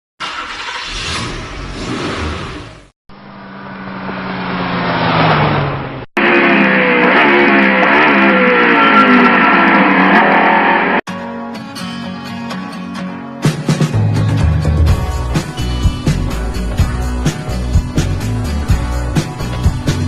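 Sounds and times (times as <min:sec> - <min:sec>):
car engine revving: 0:00.2 - 0:11.0
guitar music: 0:06.2 - 0:20.0.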